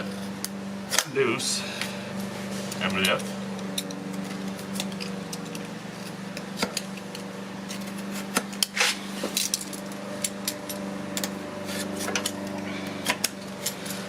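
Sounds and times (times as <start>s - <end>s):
steady low hum: 0.0s - 14.0s
blade scraping board: 7.7s - 9.6s, 11.6s - 14.0s.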